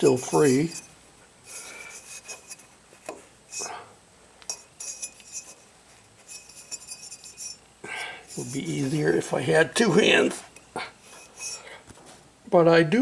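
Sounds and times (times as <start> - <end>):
metallic clinks and scrapes: 0.0 - 2.7, 4.5 - 7.7, 10.5 - 11.8.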